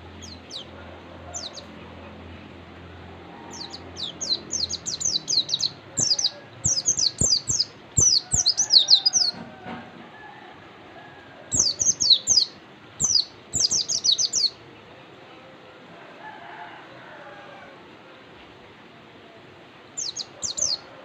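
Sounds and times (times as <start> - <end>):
bird chirping song: 0.0 - 2.7, 3.4 - 9.4, 11.5 - 15.0, 19.9 - 20.9.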